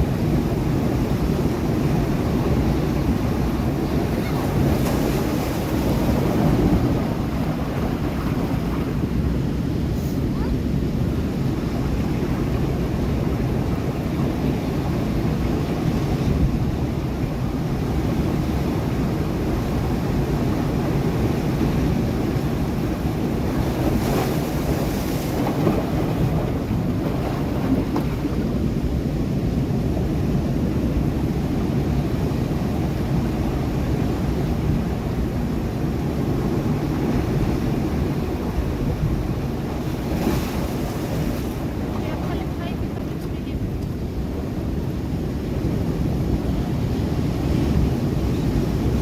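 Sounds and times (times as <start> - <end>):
waves breaking against rocks: 0.0 - 49.0
wind buffeting microphone: 0.0 - 49.0.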